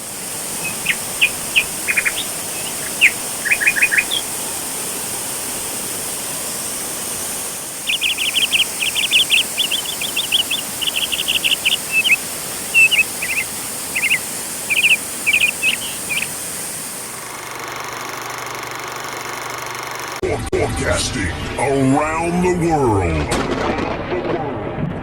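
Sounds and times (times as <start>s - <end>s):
bird chirping: 0.0s - 4.7s, 7.7s - 16.7s
waterfall rushing: 0.0s - 16.6s.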